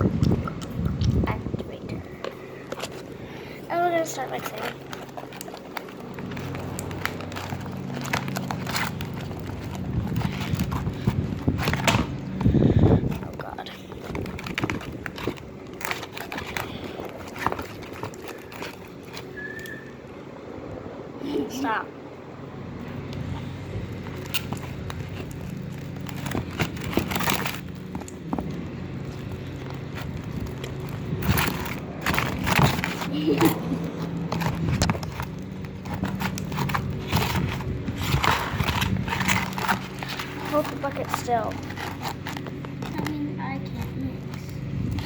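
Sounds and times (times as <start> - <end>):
steady low hum: 0.0 - 45.0
stick stirring slime in bucket: 23.4 - 45.0.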